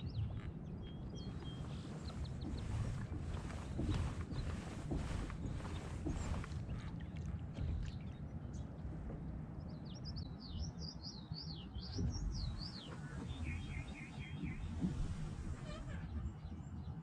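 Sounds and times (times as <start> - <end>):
outdoor noise rush: 1.1 - 8.0.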